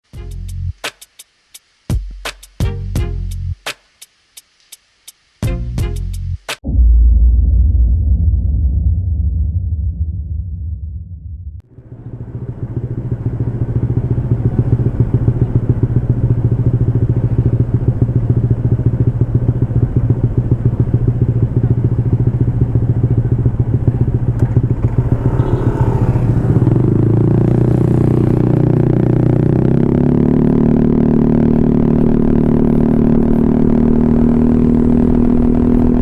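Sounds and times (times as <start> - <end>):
scooter engine idling: 11.6 - 33.4.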